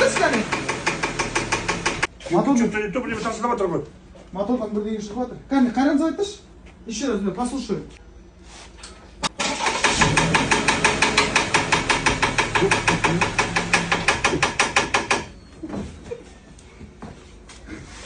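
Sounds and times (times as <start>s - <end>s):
engine knocking: 0.0s - 2.1s, 9.6s - 15.3s.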